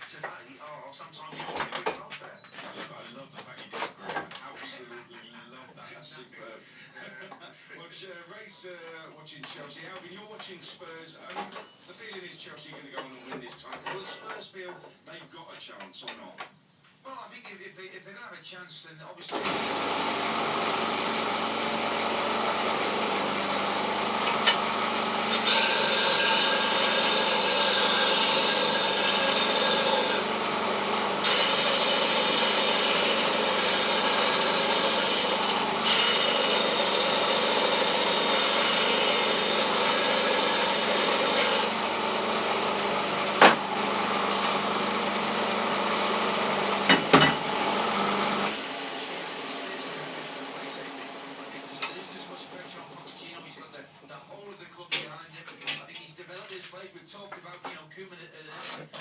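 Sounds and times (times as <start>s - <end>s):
motor running down: 19.3s - 52.8s
belt grinder motor hum: 19.3s - 53.6s
abrasive belt grinding workpiece: 19.3s - 53.8s.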